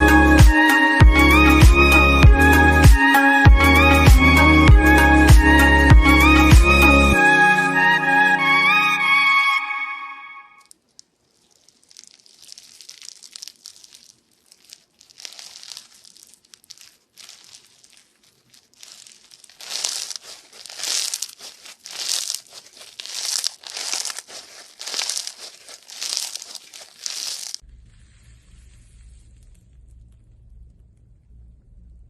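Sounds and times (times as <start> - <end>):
slime squeezed by hand crackling: 10.6 - 29.8.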